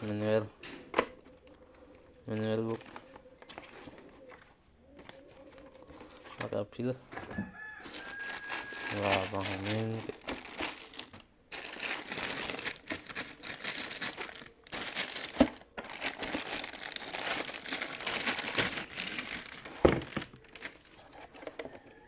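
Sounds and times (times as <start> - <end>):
packaging crinkling: 7.6 - 21.8.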